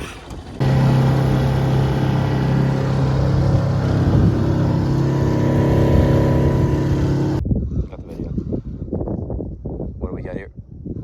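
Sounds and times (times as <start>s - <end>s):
boat motor droning: 0.4s - 7.4s
water rushing: 0.6s - 7.4s.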